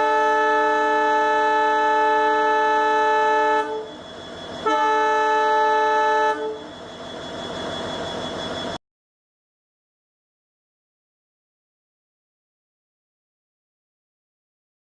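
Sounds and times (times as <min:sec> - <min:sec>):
locomotive horn chord: 0:00.0 - 0:04.0, 0:04.6 - 0:06.7.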